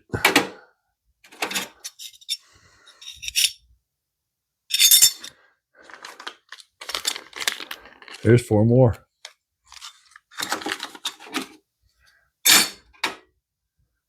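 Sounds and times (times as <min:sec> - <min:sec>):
metal hand tools clinking: 0:03.0 - 0:03.6, 0:04.7 - 0:05.4.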